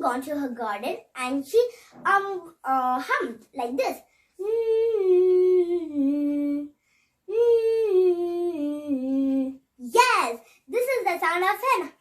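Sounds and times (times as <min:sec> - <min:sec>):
person humming: 0:04.4 - 0:09.7.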